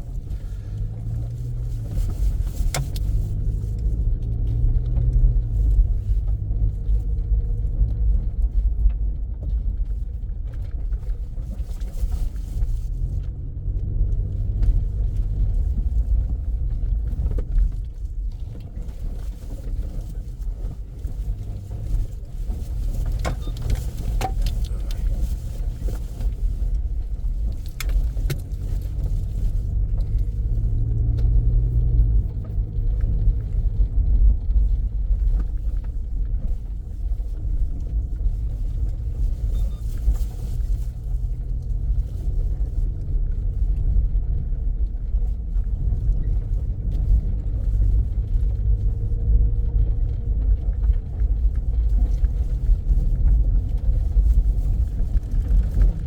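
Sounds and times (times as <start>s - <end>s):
vehicle engine and road rumble: 0.0s - 56.0s.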